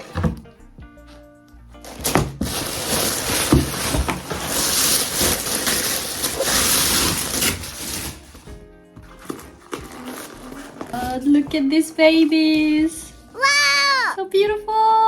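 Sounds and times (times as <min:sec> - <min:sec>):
packaging rustling and crinkling: 0:01.8 - 0:12.8.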